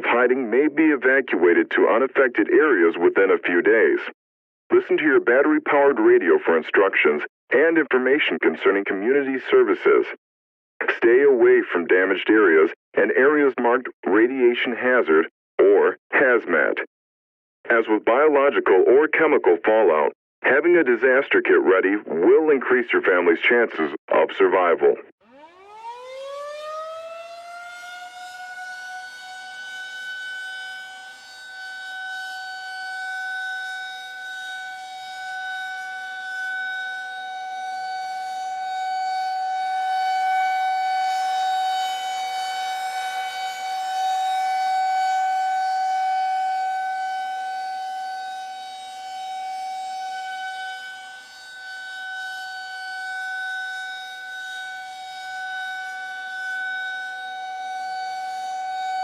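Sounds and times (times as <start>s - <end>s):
air-raid siren steady tone: 25.1s - 59.0s.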